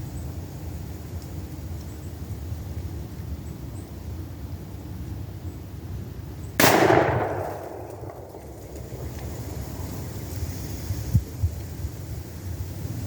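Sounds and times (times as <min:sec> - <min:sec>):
revolver gunshot with echo: 0:06.6 - 0:08.5.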